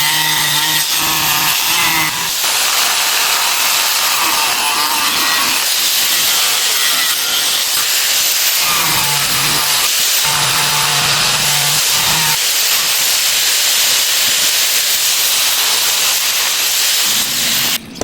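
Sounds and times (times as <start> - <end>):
hand tool rasping: 0.0 - 12.4.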